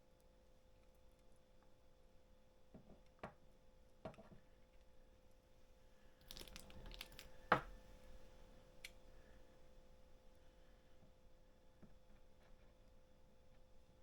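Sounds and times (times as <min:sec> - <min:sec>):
faint steady hum: 0:00.0 - 0:14.0
small clicks taps and rustles: 0:06.2 - 0:07.7.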